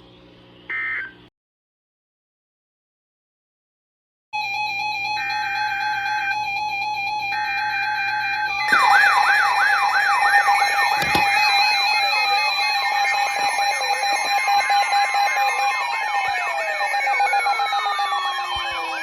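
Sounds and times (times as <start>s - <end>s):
falling siren wails: 4.4s - 19.0s
rapid siren sweep: 4.4s - 19.0s
steady alarm tone: 4.4s - 19.0s.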